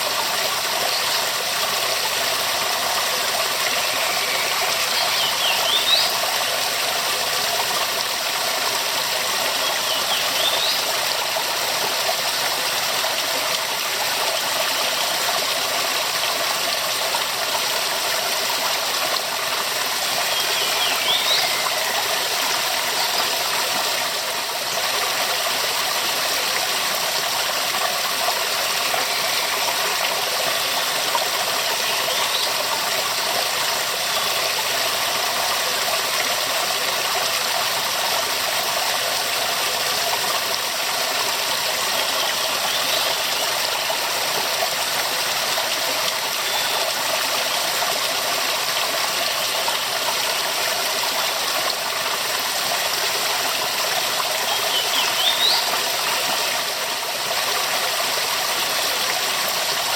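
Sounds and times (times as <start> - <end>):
waterfall rushing: 0.0 - 0.6, 18.8 - 27.4, 48.6 - 59.9.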